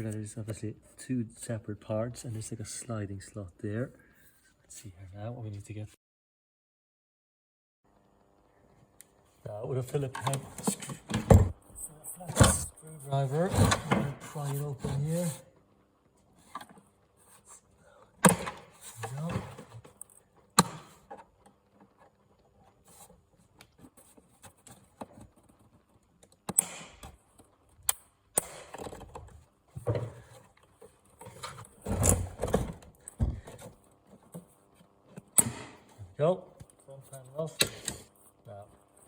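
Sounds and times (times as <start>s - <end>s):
scraping and handling noise: 9.4s - 15.5s, 18.3s - 27.8s, 28.6s - 39.0s.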